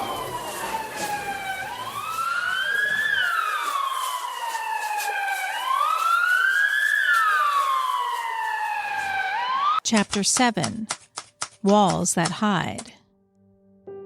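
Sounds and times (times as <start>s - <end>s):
emergency vehicle siren wailing: 0.0s - 9.8s.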